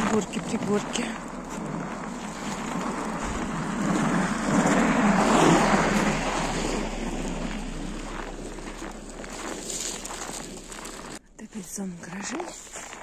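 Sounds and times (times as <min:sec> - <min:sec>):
car driving past: 0:01.2 - 0:11.2.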